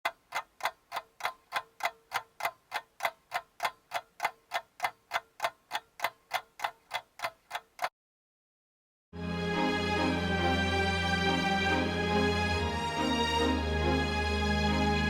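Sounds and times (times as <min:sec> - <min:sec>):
clock ticking: 0:00.0 - 0:07.9.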